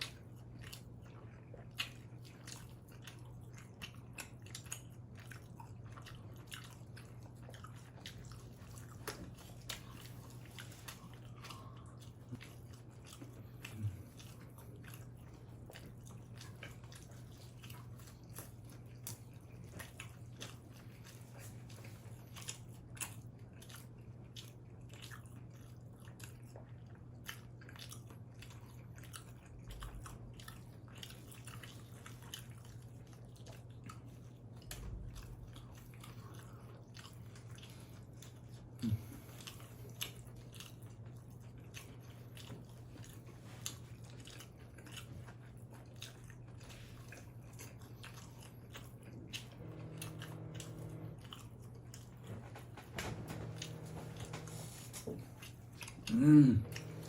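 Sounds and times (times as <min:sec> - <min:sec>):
chewing and biting pizza: 0:00.0 - 0:57.0
steady low hum: 0:28.4 - 0:57.0.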